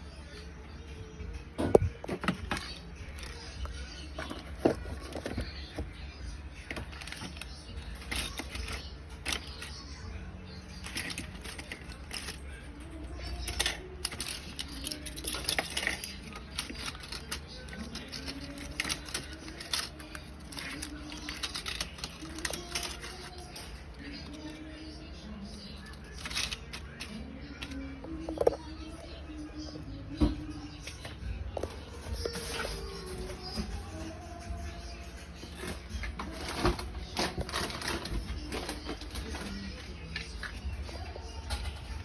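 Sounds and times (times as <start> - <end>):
bottles and cans clicking and knocking: 1.5 - 6.0, 13.2 - 24.4
snack packages rustling: 1.6 - 9.8, 10.8 - 28.8, 35.4 - 42.0.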